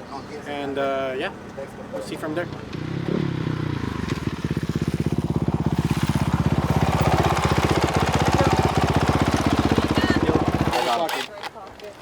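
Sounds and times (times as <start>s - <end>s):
motorcycle engine idling: 2.6s - 10.8s.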